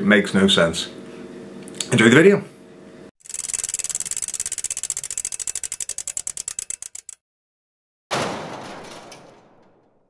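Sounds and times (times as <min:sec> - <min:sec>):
fast run of ticks: 0:03.2 - 0:07.2
sudden hit: 0:08.1 - 0:10.0.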